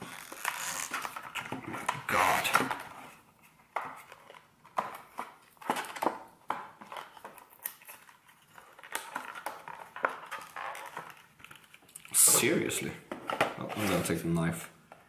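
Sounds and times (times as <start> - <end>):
packaging being pried and pulled: 4.0 - 12.1.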